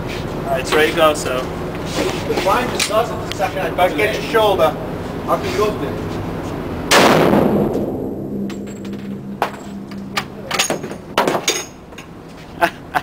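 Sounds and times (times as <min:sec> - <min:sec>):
gunshot echo: 0:06.9 - 0:11.4.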